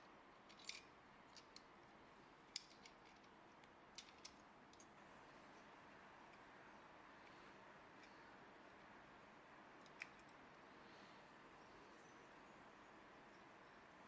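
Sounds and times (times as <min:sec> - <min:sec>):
light clicks of metal parts: 0:00.0 - 0:01.8, 0:02.4 - 0:06.5, 0:07.1 - 0:08.9, 0:09.7 - 0:11.0.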